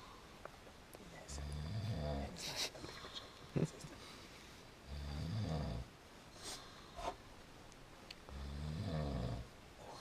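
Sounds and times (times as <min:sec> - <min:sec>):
man snoring: 0:01.4 - 0:02.3, 0:04.9 - 0:05.9, 0:08.3 - 0:09.5.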